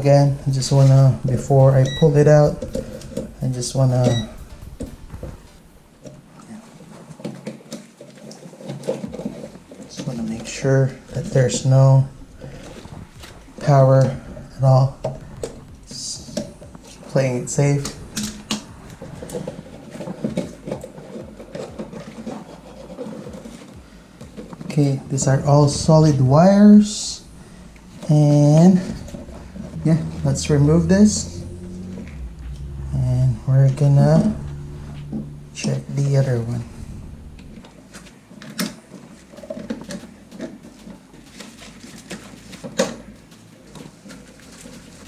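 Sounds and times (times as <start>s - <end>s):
rubbing and scraping: 0.0s - 6.3s, 7.3s - 45.0s.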